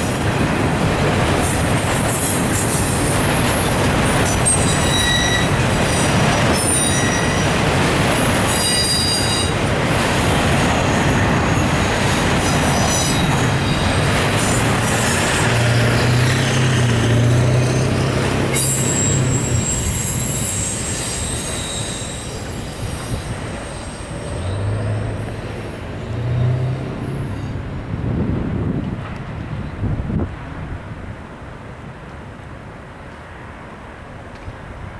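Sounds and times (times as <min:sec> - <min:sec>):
high wheel squeals: 0:00.0 - 0:27.6
freight train rolling on rails: 0:00.0 - 0:34.9.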